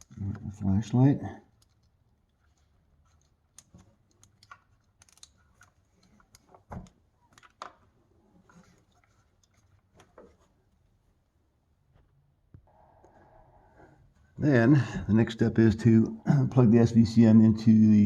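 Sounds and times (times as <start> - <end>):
plastic cable tie clicks: 3.1 - 7.8.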